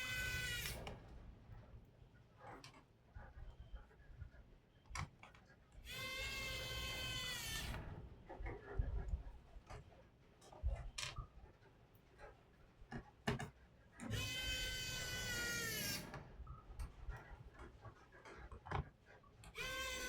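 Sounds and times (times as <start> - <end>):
drawn-out animal cry: 0.0 - 0.8, 14.1 - 16.1, 19.6 - 20.0.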